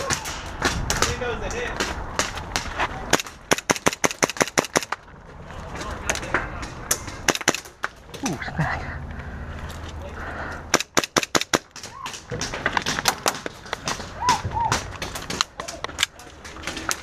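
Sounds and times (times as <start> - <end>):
airsoft guns firing: 1.8 - 5.0, 6.9 - 7.8, 10.7 - 16.1.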